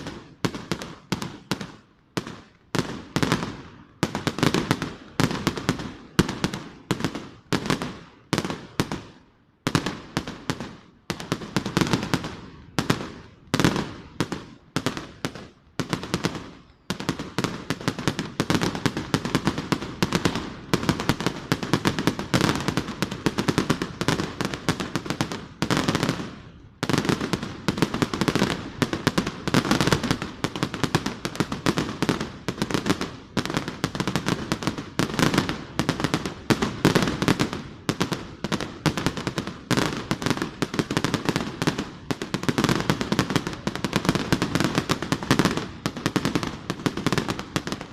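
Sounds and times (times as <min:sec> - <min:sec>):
firework bangs: 0:00.0 - 0:47.9
firework barrage and crackle: 0:00.0 - 0:47.9.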